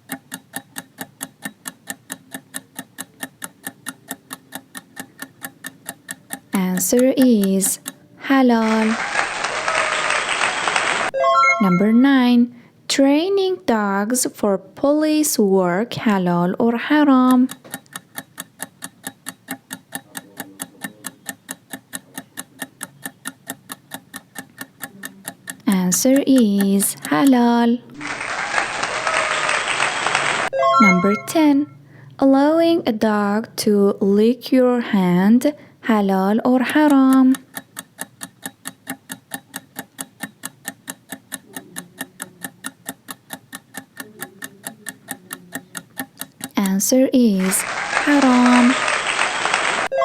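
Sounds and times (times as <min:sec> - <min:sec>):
clock ticking: 0:00.0 - 0:09.1, 0:11.1 - 0:28.0, 0:30.5 - 0:48.8.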